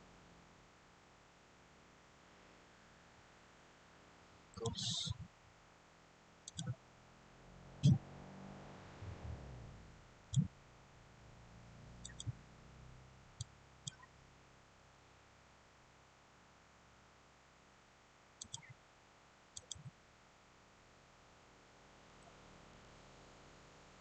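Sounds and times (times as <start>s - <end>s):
computer mouse clicking: 6.5s - 6.8s, 12.0s - 12.4s, 13.4s - 14.1s, 18.4s - 18.8s, 19.6s - 19.9s.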